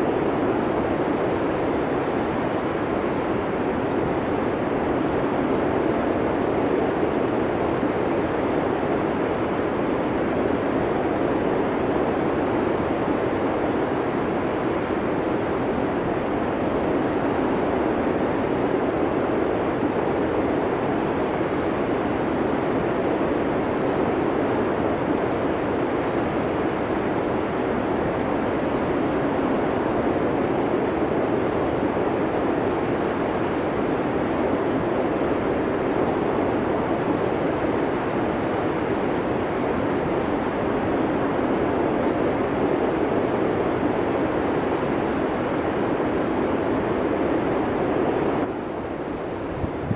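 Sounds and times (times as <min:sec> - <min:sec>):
blizzard wind blowing: 0:48.5 - 0:49.9.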